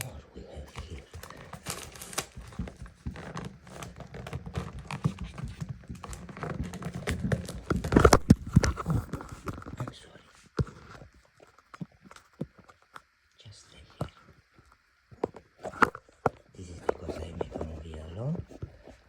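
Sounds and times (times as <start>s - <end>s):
packaging rustling: 0.7s - 9.8s.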